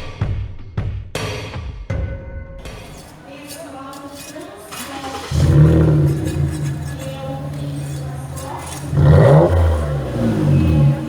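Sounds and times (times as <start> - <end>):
car engine idling and revving: 2.6 - 11.0.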